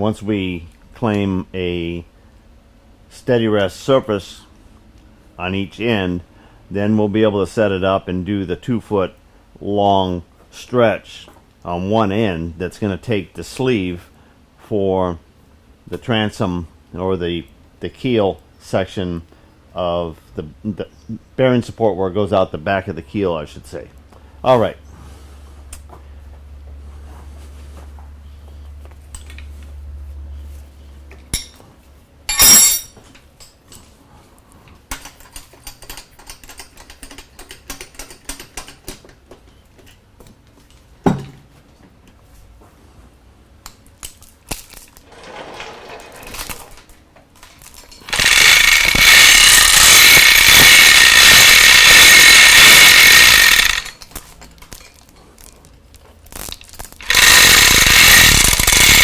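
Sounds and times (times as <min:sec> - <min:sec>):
loud mechanical rattle: 0:47.8 - 0:54.1, 0:56.4 - 0:59.0.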